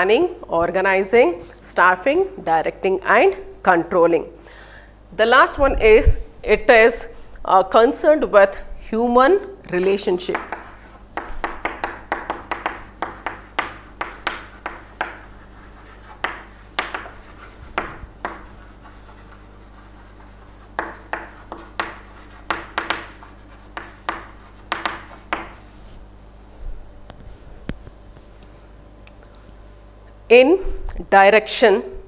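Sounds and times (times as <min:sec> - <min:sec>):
pen scratching handwriting: 0:10.3 - 0:25.5.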